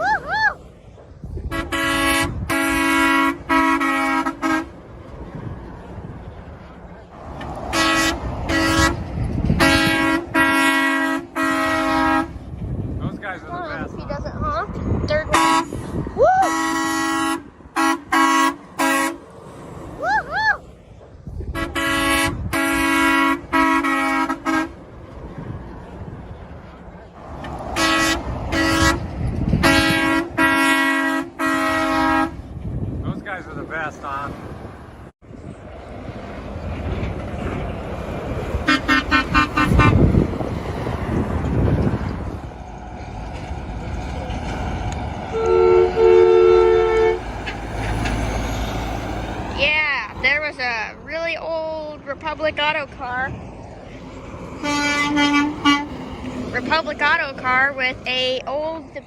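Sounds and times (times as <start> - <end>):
person whooping: 0.0 - 0.6, 16.1 - 16.6, 20.0 - 20.6
truck engine rumble: 0.0 - 59.0
truck air horn honking: 1.4 - 4.9, 7.7 - 12.5, 15.2 - 19.3, 21.5 - 24.8, 27.7 - 32.6, 38.6 - 40.2, 45.3 - 47.6, 54.6 - 57.2.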